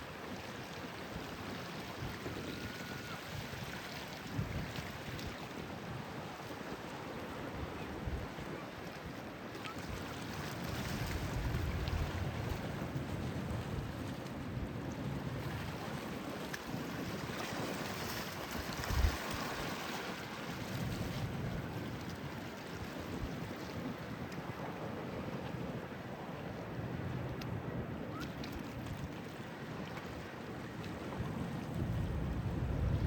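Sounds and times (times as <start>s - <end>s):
wind buffeting microphone: 9.9s - 33.0s.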